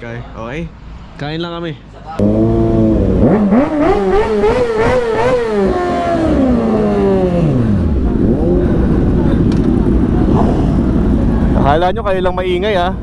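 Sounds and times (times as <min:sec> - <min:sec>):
motorcycle engine revving: 0:02.2 - 0:11.8.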